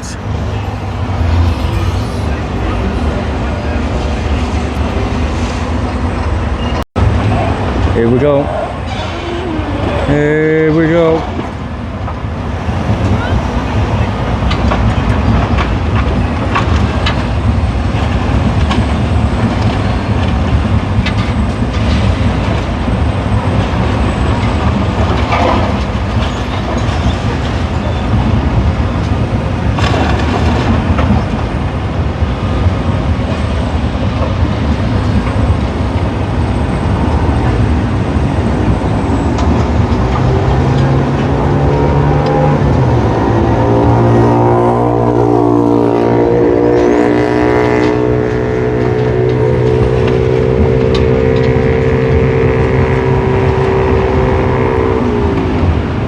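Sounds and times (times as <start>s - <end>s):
demolition machinery rumbling: 0.0s - 56.0s
diesel engine revving: 34.6s - 56.0s.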